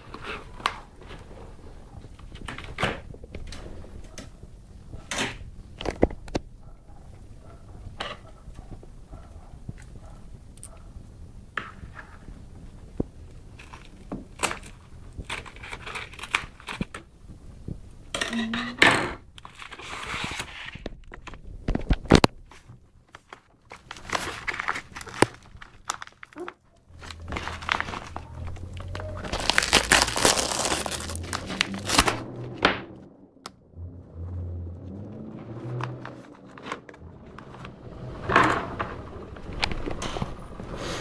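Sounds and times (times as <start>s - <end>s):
plastic packaging crinkling: 21.1s - 32.5s.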